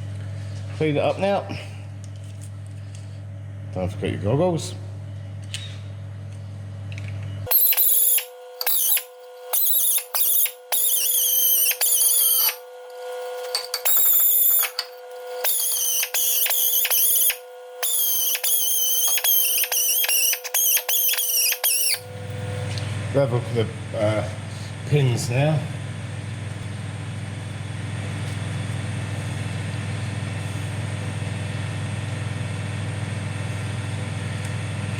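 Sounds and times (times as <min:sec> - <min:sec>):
steady hum: 0:00.0 - 0:34.9
air blow gun hissing: 0:07.5 - 0:12.6, 0:15.4 - 0:22.0.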